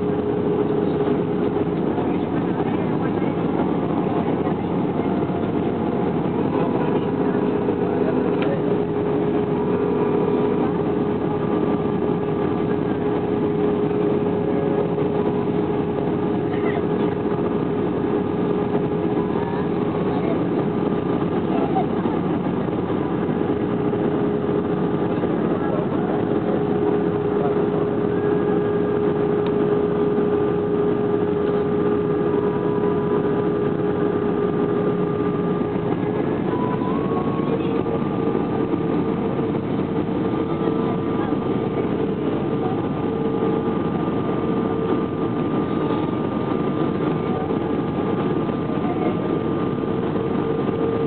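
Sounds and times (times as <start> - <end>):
aircraft cabin engine and airflow rush: 0.0 - 51.0
steady hum tone: 0.0 - 51.0.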